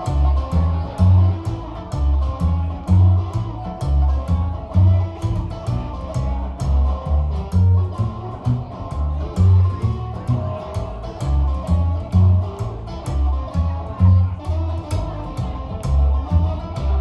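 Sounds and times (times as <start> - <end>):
bass guitar line: 0.0 - 17.0
electric guitar: 0.0 - 17.0
steady drum beat: 0.0 - 17.0.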